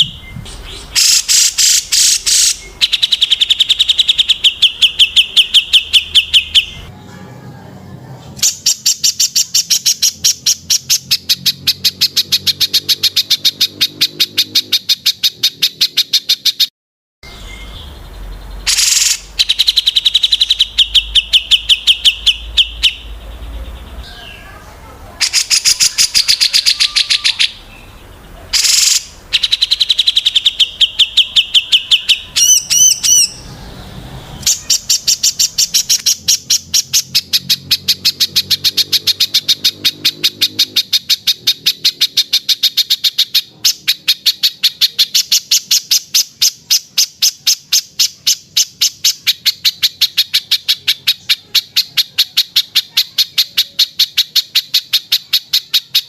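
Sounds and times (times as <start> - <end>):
songbird trills and whistles: 0.0 - 6.9, 17.3 - 24.5, 25.2 - 28.0, 28.6 - 33.5.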